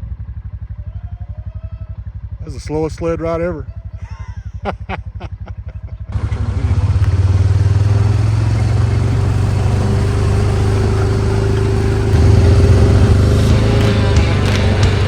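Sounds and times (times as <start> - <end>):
vehicle engine revving and running: 0.0 - 15.0
rushing noise: 6.2 - 15.0.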